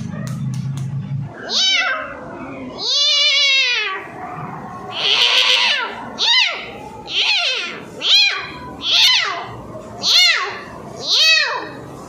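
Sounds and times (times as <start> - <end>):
cat meowing: 1.4 - 4.2, 4.9 - 11.8.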